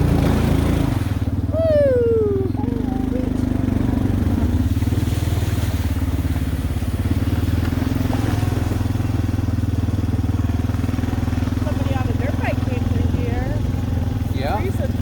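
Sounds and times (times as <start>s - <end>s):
quad bike engine running: 0.0s - 15.0s.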